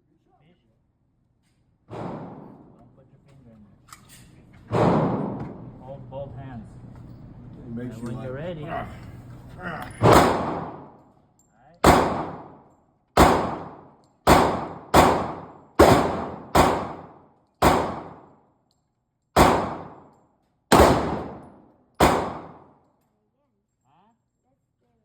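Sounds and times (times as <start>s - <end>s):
handgun shots echoing: 10.0s - 11.0s, 11.8s - 18.4s, 19.4s - 22.8s.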